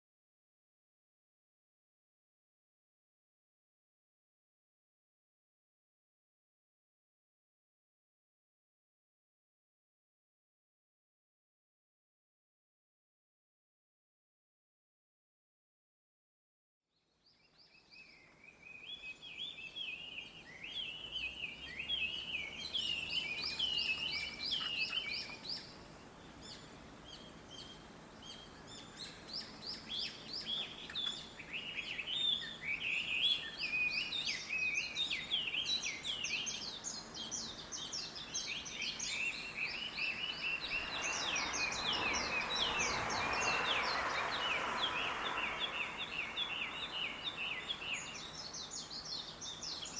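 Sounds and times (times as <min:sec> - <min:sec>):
small birds chirping and twittering: 0:17.0 - 0:49.9.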